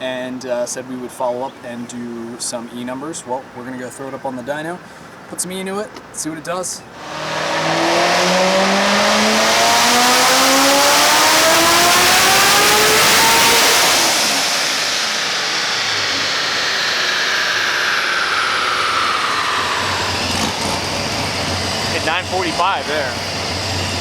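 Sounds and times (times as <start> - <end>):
car engine revving at full throttle: 6.9 - 24.0
supercharger whine: 6.9 - 24.0.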